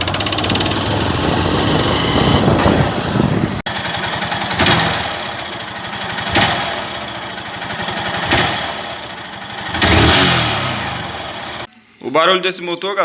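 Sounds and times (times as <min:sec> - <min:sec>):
engine gear knocking: 0:00.0 - 0:10.2
motorcycle engine revving: 0:00.0 - 0:11.7.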